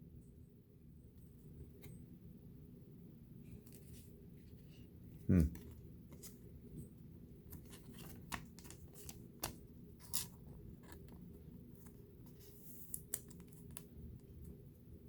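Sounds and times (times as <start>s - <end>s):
low steady hum: 0.0s - 15.0s
cards clicking and rustling: 7.5s - 14.0s.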